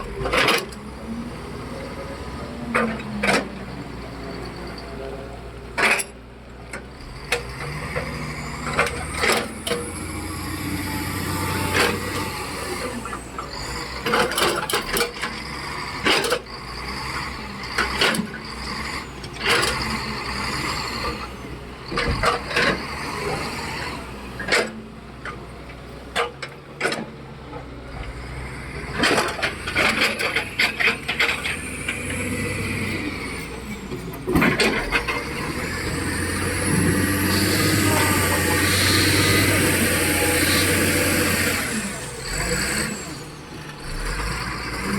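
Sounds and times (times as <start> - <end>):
diesel machinery humming: 0.0 - 44.9
rock and steel clanking: 26.1 - 44.9.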